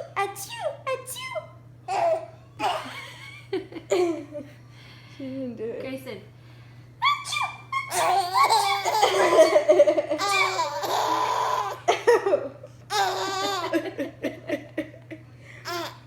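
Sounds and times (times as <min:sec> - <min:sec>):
baby laughing: 0:01.9 - 0:03.2, 0:07.0 - 0:12.2, 0:12.9 - 0:14.2, 0:15.7 - 0:16.0.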